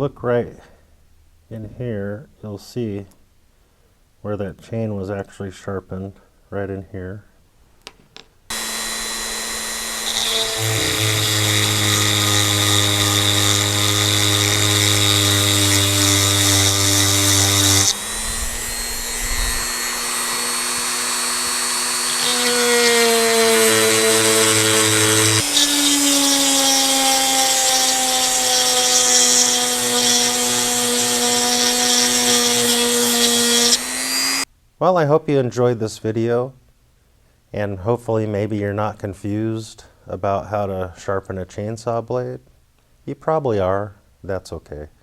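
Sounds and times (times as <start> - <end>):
rotary tool grinding chain: 8.5 - 34.4.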